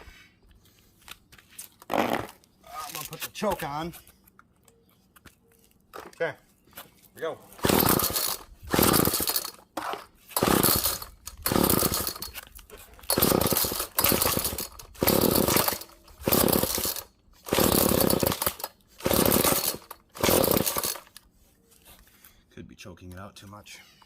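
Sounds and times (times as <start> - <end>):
recoil starter rope whirring: 7.5 - 21.2.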